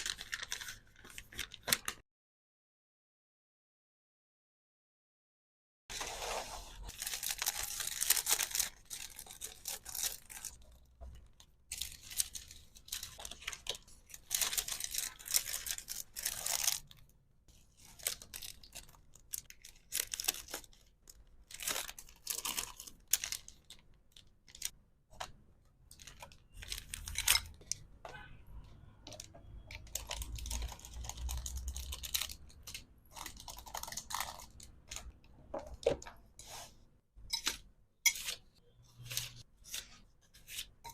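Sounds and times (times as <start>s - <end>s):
packaging tearing and crinkling: 6.9s - 10.6s, 11.7s - 17.0s, 21.4s - 23.8s.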